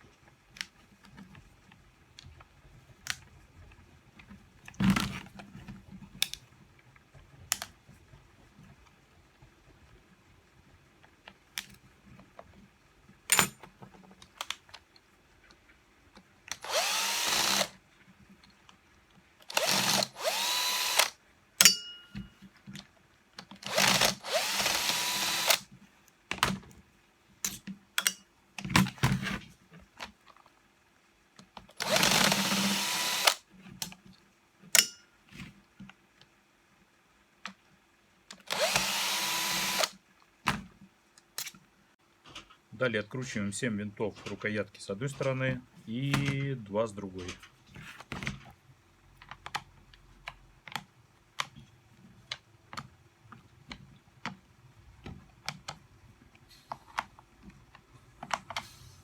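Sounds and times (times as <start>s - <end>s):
electric screwdriver whine: 16.5s - 17.8s, 19.5s - 21.2s, 23.6s - 25.7s, 31.8s - 33.4s, 38.4s - 40.0s.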